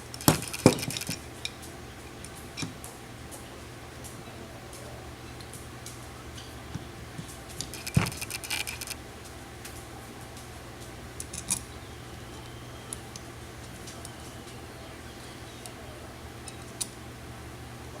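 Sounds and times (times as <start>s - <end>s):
steady low hum: 0.0s - 18.0s
steel tool parts clinking: 0.1s - 2.8s.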